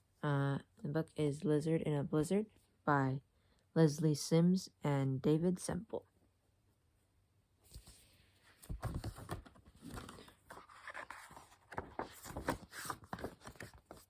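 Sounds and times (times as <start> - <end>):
paper pages turning: 7.7 - 14.0
paper rustling and scraping: 7.7 - 14.0.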